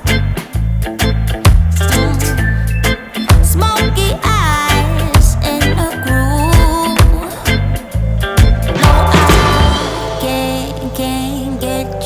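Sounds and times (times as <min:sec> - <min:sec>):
funk music with bass drums guitar: 0:00.0 - 0:12.0.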